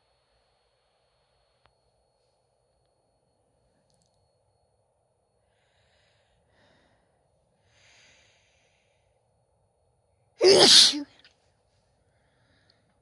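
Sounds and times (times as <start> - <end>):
faint breaths in: 5.5 - 9.2
woman sneezing: 10.4 - 11.1.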